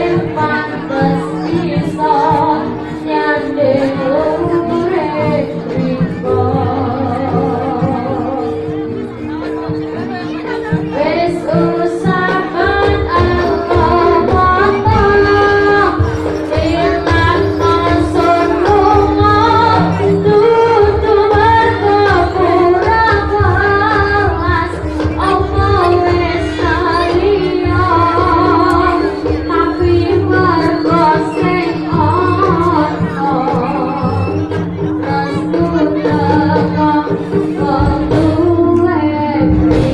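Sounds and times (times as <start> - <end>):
woman singing: 0.0 - 9.4, 10.1 - 39.9
held instrument tones: 0.0 - 39.9.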